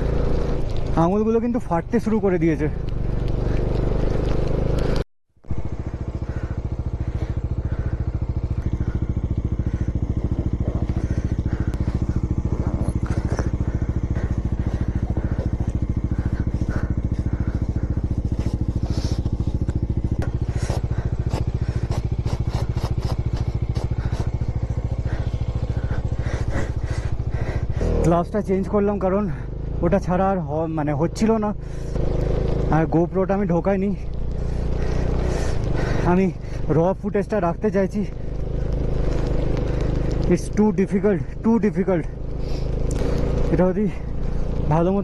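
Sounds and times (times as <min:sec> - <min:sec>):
engine crackles: 0:00.0 - 0:45.0
motorcycle engine running: 0:00.0 - 0:45.0.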